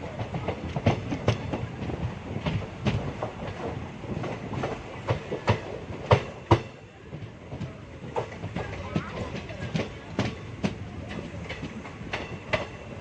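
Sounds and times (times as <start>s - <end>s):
clickety-clack over rail joints: 0.0s - 13.0s
train wheels rumbling: 0.0s - 13.0s.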